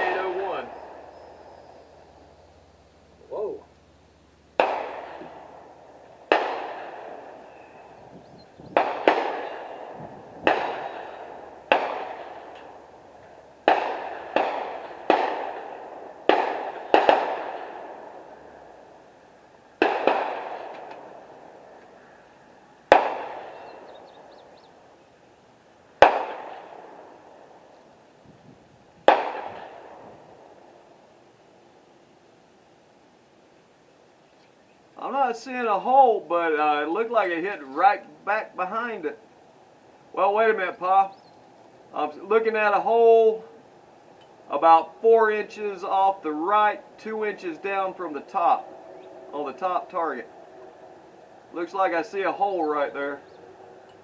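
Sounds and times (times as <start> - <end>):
gunshots with echo: 0.0 - 1.2, 4.6 - 7.5, 8.8 - 12.9, 13.6 - 18.4, 19.8 - 21.5, 22.9 - 23.9, 26.0 - 27.4, 29.0 - 30.5.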